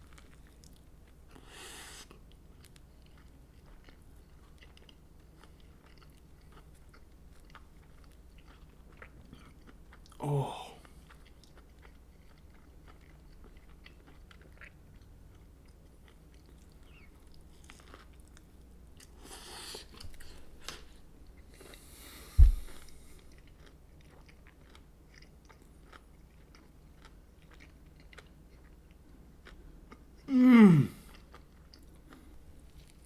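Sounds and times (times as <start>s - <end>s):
person chewing crispy food: 0.0s - 33.0s
sharp low thump: 22.4s - 23.0s.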